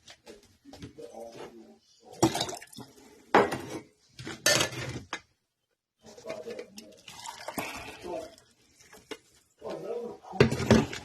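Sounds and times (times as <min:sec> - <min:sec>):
dishes and utensils clattering: 0:03.3 - 0:05.1.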